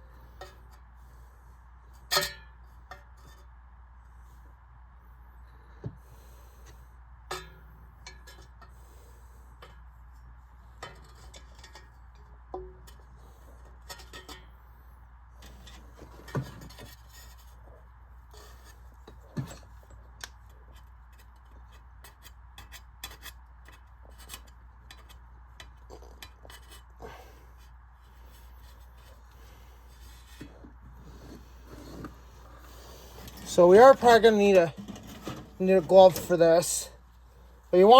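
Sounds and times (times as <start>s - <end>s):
low steady hum: 0.0s - 37.9s
hand tool clicking and scraping: 10.8s - 14.5s, 18.3s - 36.6s.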